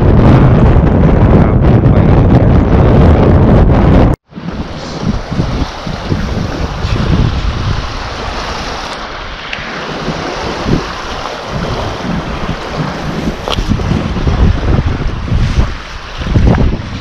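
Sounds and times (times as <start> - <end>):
gusty wind buffeting microphone: 0.0 - 17.0
waves washing on lake: 4.2 - 17.0.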